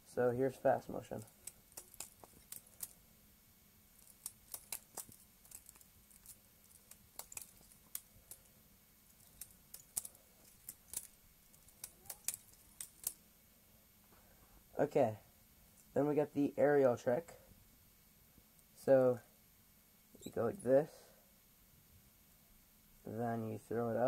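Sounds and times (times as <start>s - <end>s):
butterfly knife trainer clacking: 1.1s - 3.0s.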